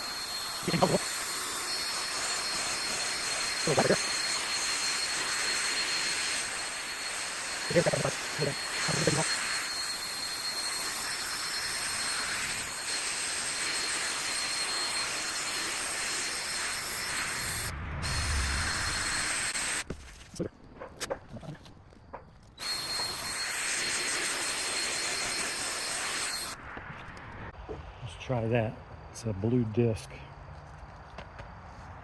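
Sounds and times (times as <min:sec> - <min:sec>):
sanding disc whirring on plastic: 0:00.0 - 0:20.0, 0:22.4 - 0:27.1.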